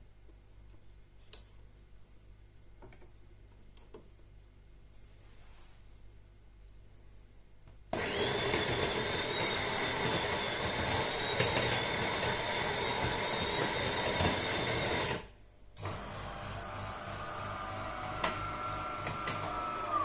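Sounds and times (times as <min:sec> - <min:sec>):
quiet steady hum: 0:00.0 - 0:08.0
coffee machine motor whining: 0:08.0 - 0:20.0.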